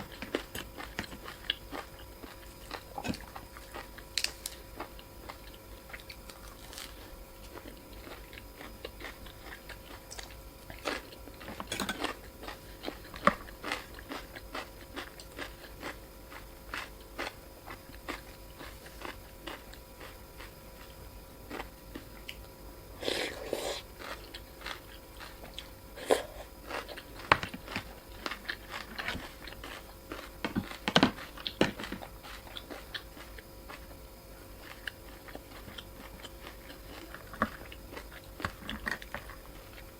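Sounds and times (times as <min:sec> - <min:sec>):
small eating clicks: 0:00.0 - 0:22.6, 0:23.8 - 0:39.9
person chewing and biting: 0:00.0 - 0:39.9.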